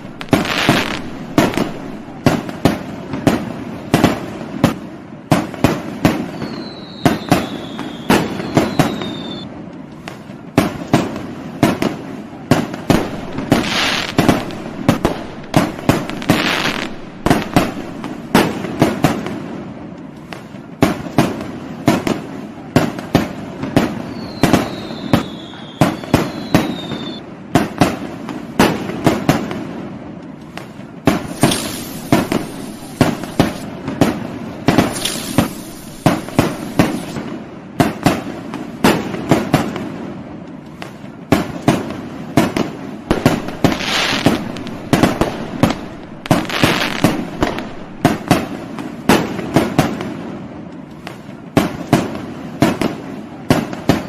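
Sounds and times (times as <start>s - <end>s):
firework hissing bursts: 0.0s - 2.8s, 6.4s - 9.4s, 12.8s - 18.8s, 31.1s - 33.7s, 34.7s - 37.2s, 43.1s - 48.8s
fireworks bangs and crackling: 0.0s - 54.0s
falling whistle: 6.4s - 9.5s, 24.1s - 27.2s.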